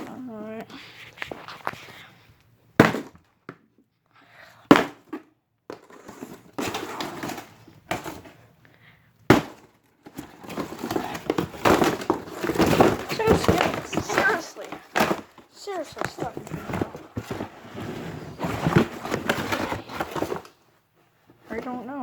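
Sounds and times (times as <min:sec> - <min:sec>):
hammer hitting cardboard box: 0:02.8 - 0:03.2, 0:04.7 - 0:05.0, 0:09.3 - 0:09.7, 0:10.4 - 0:15.3
cardboard rustling and tearing: 0:05.8 - 0:08.3, 0:09.4 - 0:20.6.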